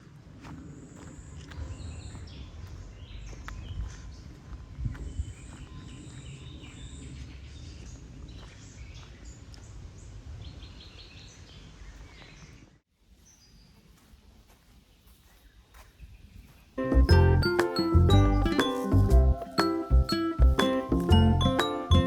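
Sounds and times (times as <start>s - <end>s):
small birds chirping: 0.5s - 14.0s.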